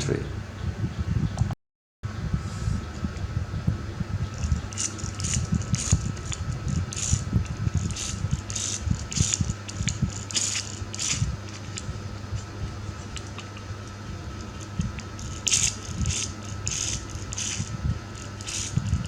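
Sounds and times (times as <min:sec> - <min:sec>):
toy car parts rattling: 0:04.4 - 0:07.2, 0:07.8 - 0:11.2, 0:15.2 - 0:17.6, 0:18.2 - 0:19.0.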